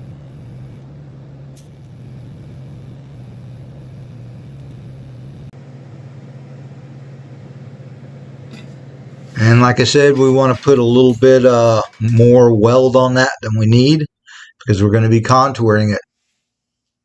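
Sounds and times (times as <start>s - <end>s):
welding arc buzzing: 0.0s - 12.9s.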